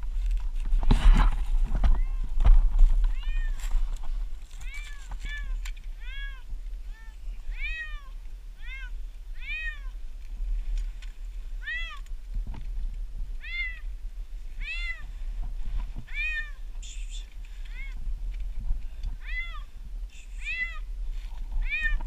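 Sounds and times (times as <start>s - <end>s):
cat meowing: 3.1s - 3.6s, 4.6s - 10.0s, 11.6s - 12.1s, 13.4s - 13.9s, 14.6s - 15.1s, 16.1s - 16.6s, 19.2s - 19.7s, 20.4s - 20.9s, 21.6s - 22.0s.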